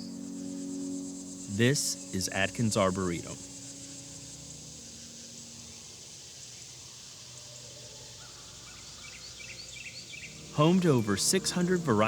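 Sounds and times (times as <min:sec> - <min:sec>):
bird chirps: 0:00.0 - 0:06.7, 0:07.5 - 0:12.0
high insect hiss: 0:00.0 - 0:12.0.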